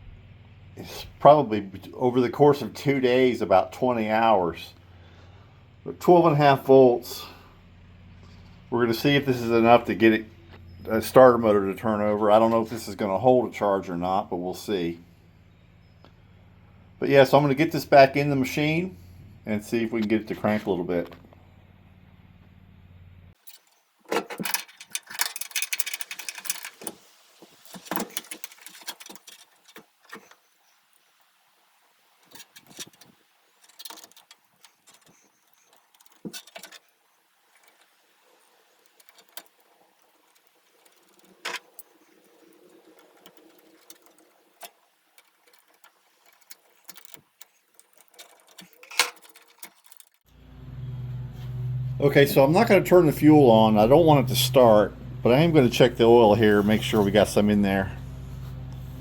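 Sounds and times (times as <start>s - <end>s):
metallic rattling and clatter: 23.4s - 30.4s, 32.2s - 36.9s, 38.6s - 50.3s
clicks and knocks: 38.9s - 50.2s.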